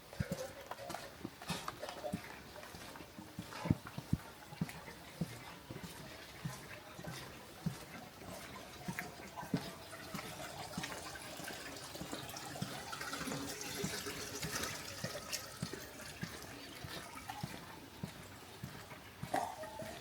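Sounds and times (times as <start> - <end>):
footsteps: 0.0 - 20.0
water running and trickling: 8.6 - 19.0.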